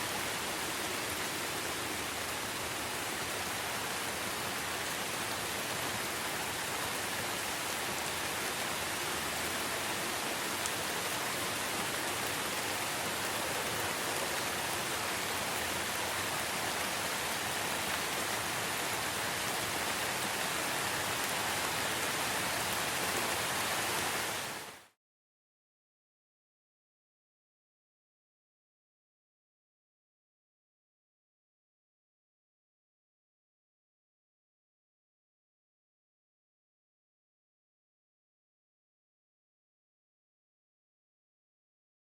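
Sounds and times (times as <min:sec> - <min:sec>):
light rain falling: 0:00.0 - 0:25.0.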